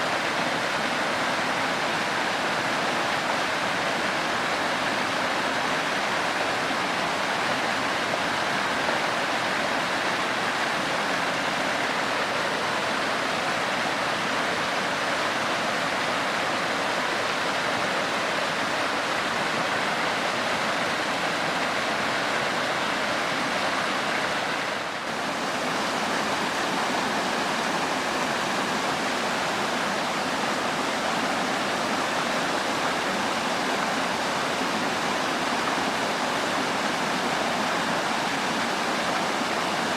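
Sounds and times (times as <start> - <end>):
waterfall onto rock: 23.7 - 39.9.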